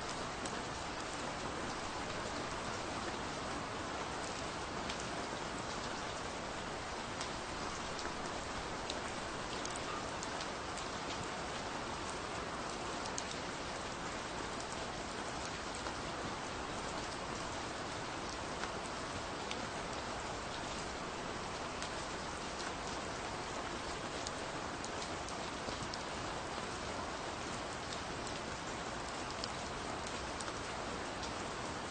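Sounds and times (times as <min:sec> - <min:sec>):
gentle rain falling: 0:00.0 - 0:31.9.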